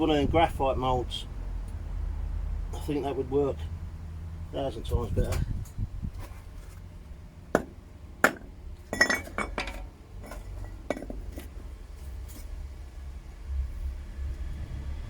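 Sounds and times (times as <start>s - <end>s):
steady low rumble: 0.0s - 15.0s
metal clinks and knocks of tools: 8.9s - 11.5s.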